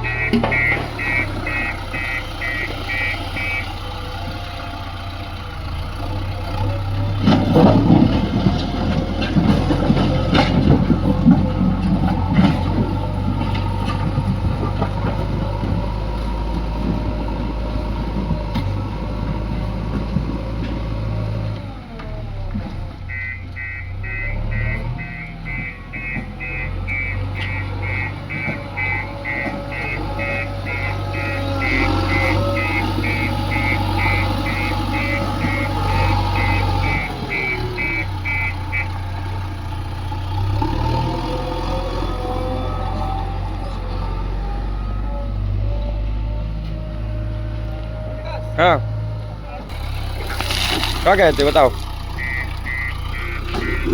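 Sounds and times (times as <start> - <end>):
reversing alarm beeping: 0.0 - 4.4, 23.1 - 39.5, 40.3 - 49.1, 51.0 - 53.9
diesel engine running: 0.0 - 53.9
clattering and scraping: 7.2 - 20.9.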